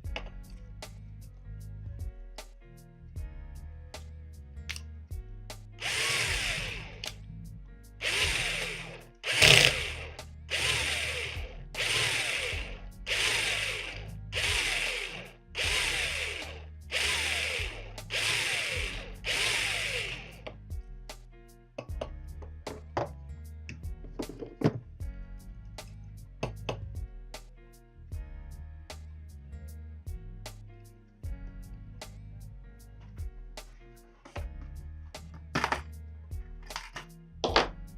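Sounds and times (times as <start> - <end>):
power drill whining into metal: 5.8 - 7.2, 8.0 - 20.4.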